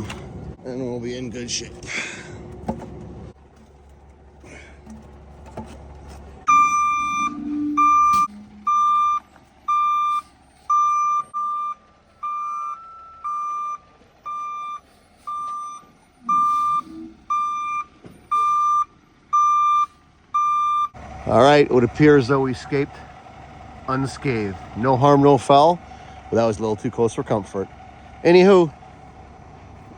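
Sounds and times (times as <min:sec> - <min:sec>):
low engine rumble: 0:00.0 - 0:29.9
truck reversing alarm beeping: 0:06.4 - 0:21.2.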